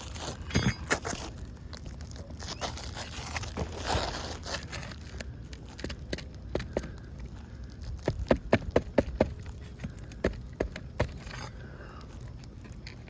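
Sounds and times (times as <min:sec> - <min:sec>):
hand tools tapping on shingles: 0:05.8 - 0:07.1, 0:08.0 - 0:11.6.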